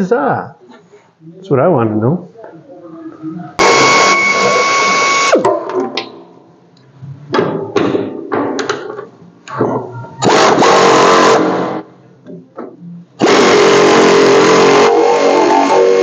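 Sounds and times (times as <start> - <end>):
power tool whirring: 3.6 - 5.5, 13.2 - 16.0.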